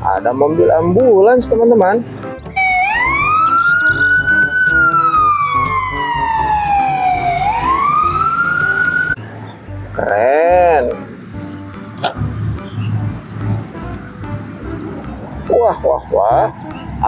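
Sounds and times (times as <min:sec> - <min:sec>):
background music: 0:00.0 - 0:17.0
ambulance siren wailing: 0:02.5 - 0:09.2.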